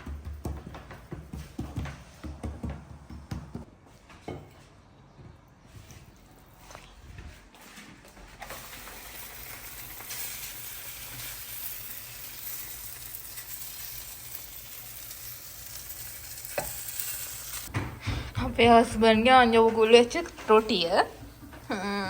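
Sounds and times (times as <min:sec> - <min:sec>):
roti sizzling in oil: 0:08.4 - 0:17.8.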